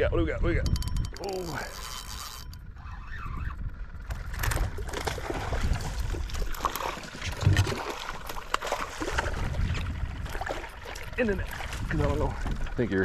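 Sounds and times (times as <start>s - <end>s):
wind buffeting microphone: 0.0s - 13.0s
water splashing against boat: 4.0s - 13.0s.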